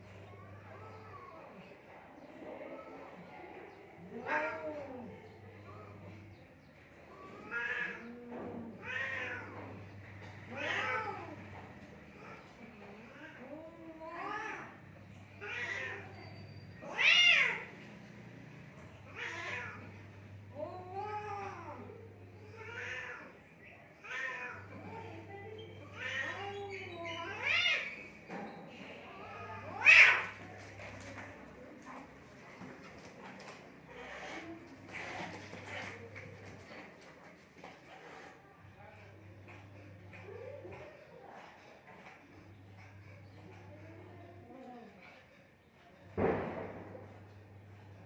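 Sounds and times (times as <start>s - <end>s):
cats yowling: 4.0s - 6.2s, 7.0s - 17.8s, 19.0s - 20.0s, 20.6s - 28.3s, 29.0s - 31.1s.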